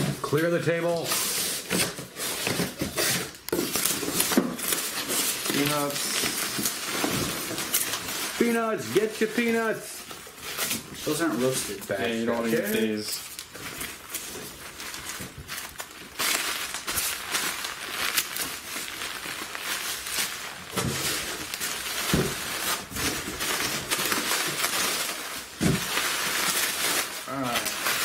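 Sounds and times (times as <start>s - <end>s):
packing peanuts rustling: 0.0s - 28.0s.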